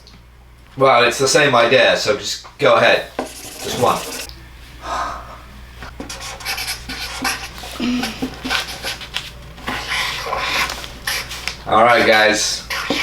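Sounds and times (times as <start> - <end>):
pen scratching on paper: 3.2 - 4.3, 6.1 - 7.6, 9.7 - 11.4, 12.7 - 13.0.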